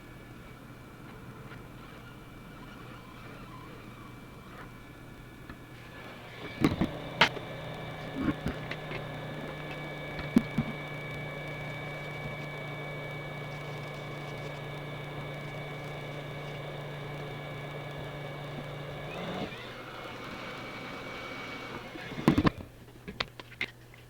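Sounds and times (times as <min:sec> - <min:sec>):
hot-air station blowing: 0:00.0 - 0:22.8.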